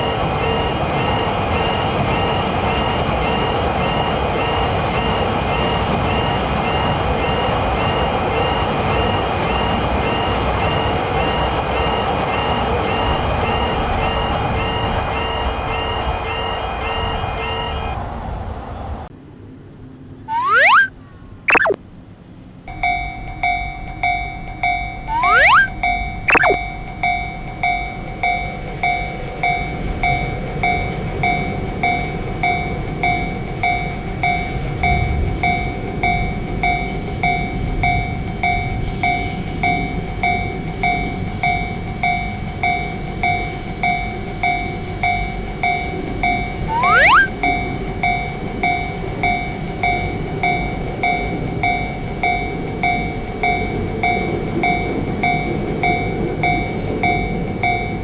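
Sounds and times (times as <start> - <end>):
rising whistle-like sweep: 20.3 - 20.9, 21.5 - 21.8, 25.1 - 25.7, 26.3 - 26.6, 46.7 - 47.3.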